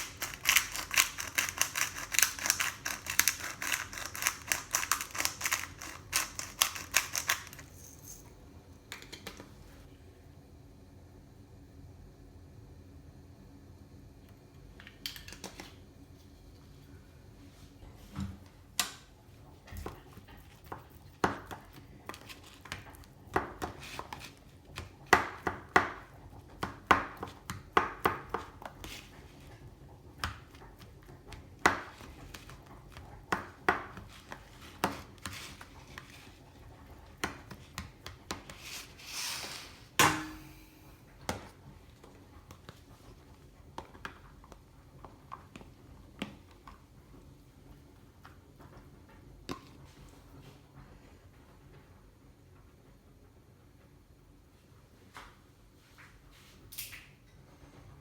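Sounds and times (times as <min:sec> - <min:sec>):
scrape: 0:38.5 - 0:39.9.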